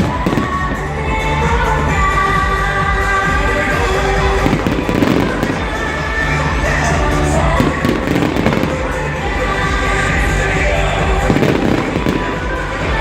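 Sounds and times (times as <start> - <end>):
music playing: 0.0 - 13.0
fireworks popping and crackling: 4.4 - 5.8, 7.5 - 9.0, 11.2 - 12.6.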